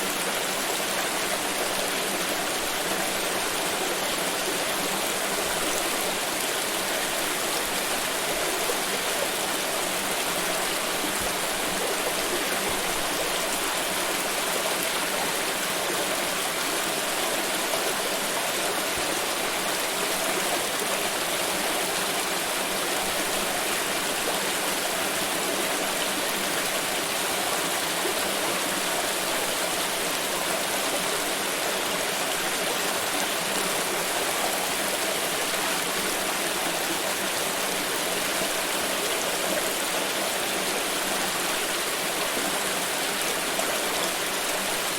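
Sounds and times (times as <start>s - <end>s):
stream running: 0.0s - 44.9s.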